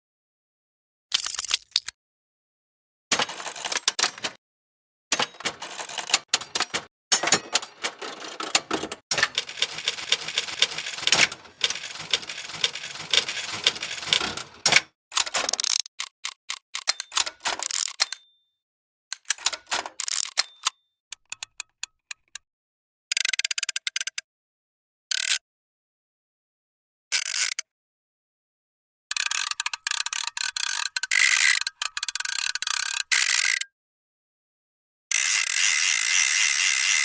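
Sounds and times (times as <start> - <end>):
gear mechanism ratcheting clicks: 5.2 - 15.8.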